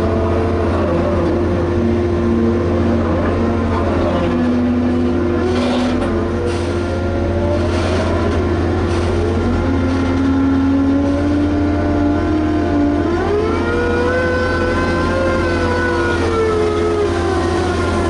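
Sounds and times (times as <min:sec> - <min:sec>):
dragline engine drone: 0:00.0 - 0:18.0
machine whine sliding in pitch: 0:06.4 - 0:18.0.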